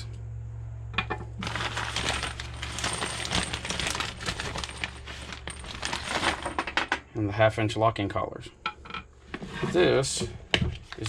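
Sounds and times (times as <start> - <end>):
metal fittings jingling and clinking: 1.4 - 6.8.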